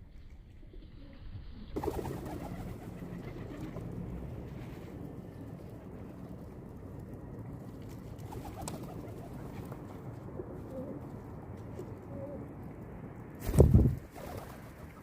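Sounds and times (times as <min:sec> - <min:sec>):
low background rumble: 0:00.0 - 0:15.0
pigeons cooing: 0:10.6 - 0:11.1, 0:11.8 - 0:12.5.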